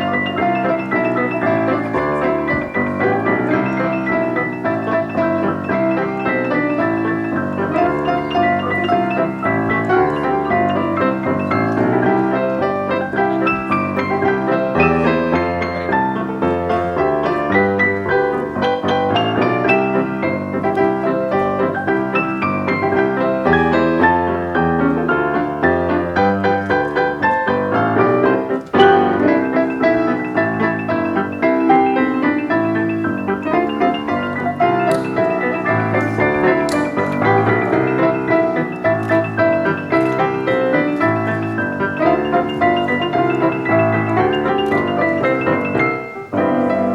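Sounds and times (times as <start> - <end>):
piano music with fast runs: 0.0 - 46.9.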